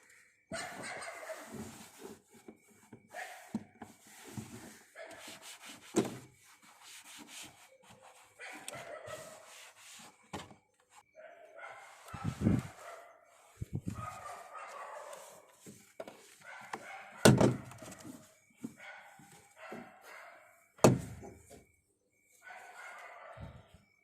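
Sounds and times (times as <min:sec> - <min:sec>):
dog barking: 0:00.5 - 0:01.7, 0:08.4 - 0:09.5, 0:11.2 - 0:15.5, 0:16.4 - 0:18.2, 0:18.8 - 0:20.6, 0:22.4 - 0:23.7.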